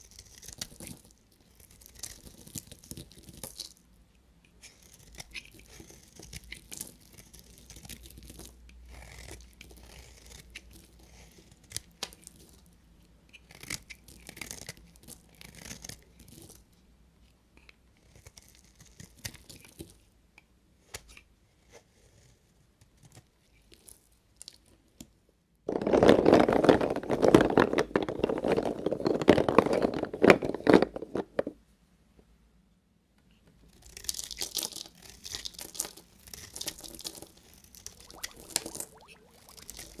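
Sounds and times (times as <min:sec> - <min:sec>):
knife crunching through soap: 0:00.0 - 0:03.8, 0:04.6 - 0:12.6, 0:13.3 - 0:16.6, 0:17.6 - 0:20.0, 0:33.7 - 0:40.0.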